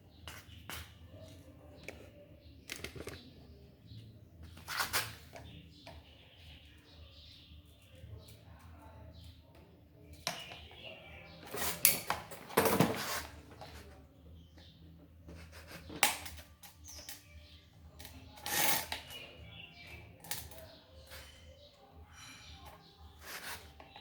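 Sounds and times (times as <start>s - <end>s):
clicks and knocks of parts: 2.6s - 3.3s
scraping rustles: 11.4s - 14.0s, 22.5s - 24.0s.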